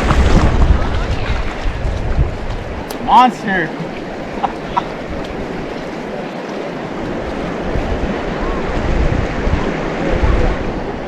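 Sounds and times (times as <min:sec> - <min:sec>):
wind buffeting microphone: 0:00.0 - 0:11.0
river rushing: 0:02.7 - 0:11.0.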